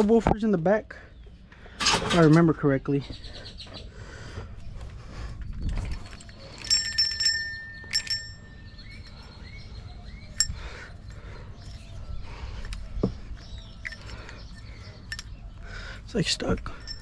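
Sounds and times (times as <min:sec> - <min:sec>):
metallic clinks ringing: 0:06.2 - 0:11.8, 0:13.5 - 0:15.6, 0:16.2 - 0:17.0.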